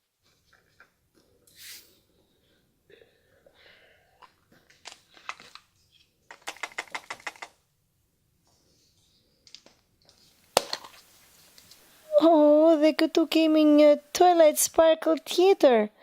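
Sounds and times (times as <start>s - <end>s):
plastic packaging clicks and rustles: 4.6s - 7.6s.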